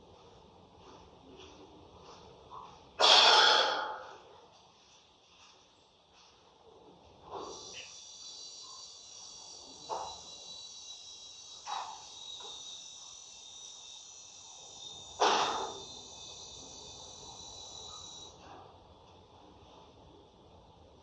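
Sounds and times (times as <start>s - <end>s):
crickets chirping: 6.7s - 18.6s.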